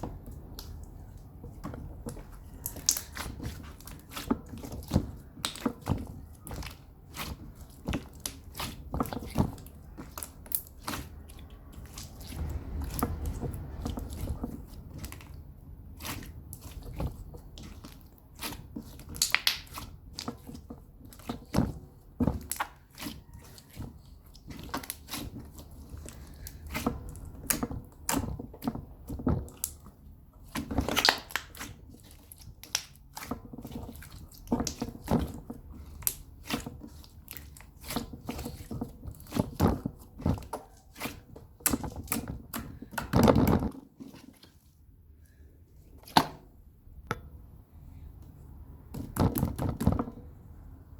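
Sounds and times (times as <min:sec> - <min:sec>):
slime bubbles popping: 0:30.9 - 0:31.5.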